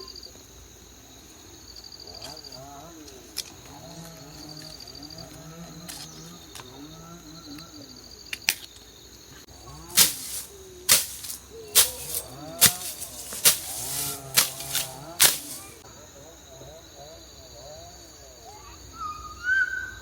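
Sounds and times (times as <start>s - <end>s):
high insect drone: 0.0s - 18.8s.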